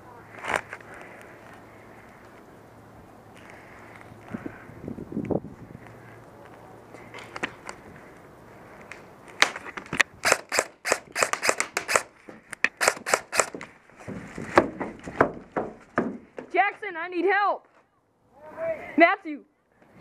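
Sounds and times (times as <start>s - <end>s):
airsoft gun firing sharp shots: 10.2s - 12.1s, 12.7s - 13.6s.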